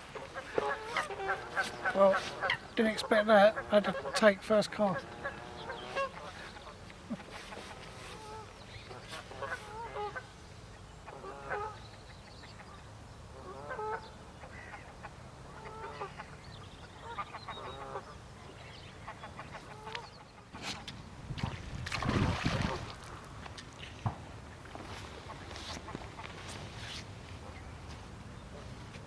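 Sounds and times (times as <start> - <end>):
geese honking: 0.1 - 10.3, 11.1 - 11.8, 13.4 - 16.3
wind rumbling on microphone: 20.9 - 29.0.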